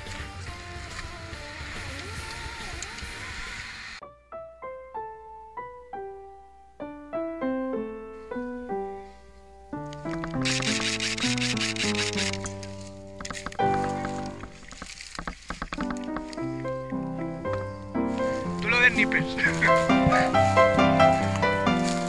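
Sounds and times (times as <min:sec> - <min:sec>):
bass and drums: 0:00.0 - 0:04.0, 0:18.3 - 0:22.0
noisy field sound: 0:00.0 - 0:22.0.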